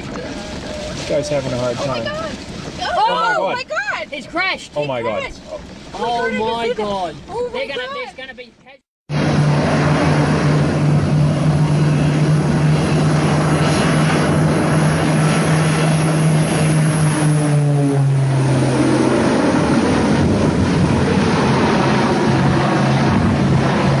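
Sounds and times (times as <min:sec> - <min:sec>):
propeller aircraft engines droning: 0:09.1 - 0:24.0.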